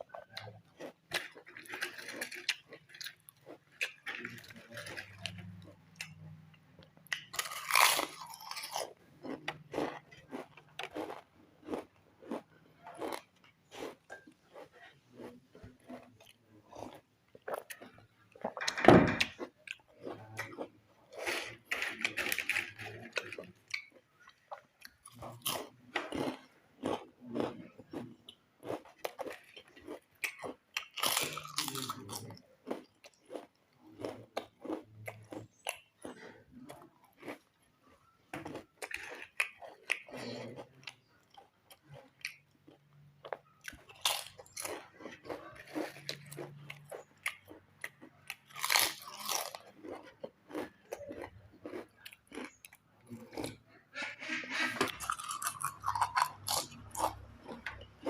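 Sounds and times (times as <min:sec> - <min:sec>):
chips crunching and chewing: 0:00.0 - 0:53.8, 0:54.5 - 0:58.0.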